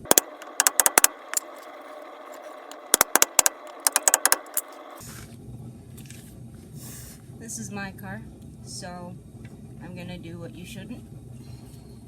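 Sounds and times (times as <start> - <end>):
hammer tapping metal: 0.0 - 1.7, 2.7 - 4.7.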